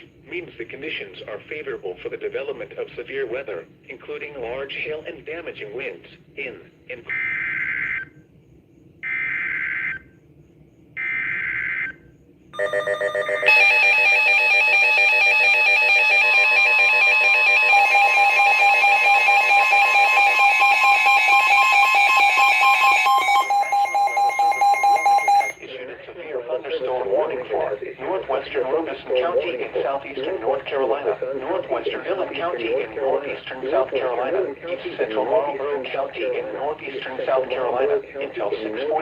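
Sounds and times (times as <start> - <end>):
pulsing alert attention tones: 12.6 - 25.6
digital data bursts: 13.5 - 25.6.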